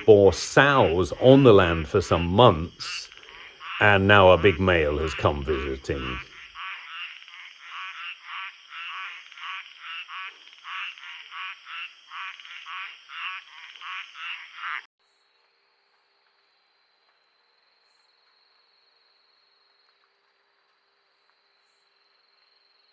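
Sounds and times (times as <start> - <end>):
high insect whine: 0.0 - 14.8
frogs croaking: 0.0 - 15.2.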